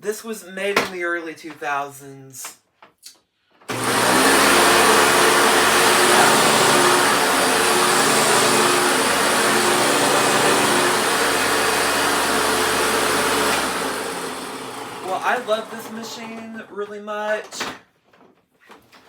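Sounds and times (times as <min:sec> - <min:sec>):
vacuum cleaner motor whirring: 0:03.7 - 0:16.7.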